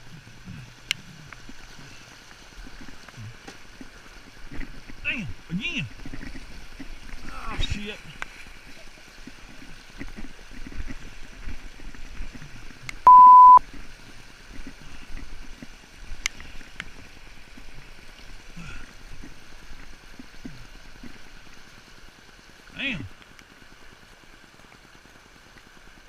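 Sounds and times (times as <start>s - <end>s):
river water running: 0.0s - 26.0s
high-pitched censor bleep: 13.1s - 13.6s.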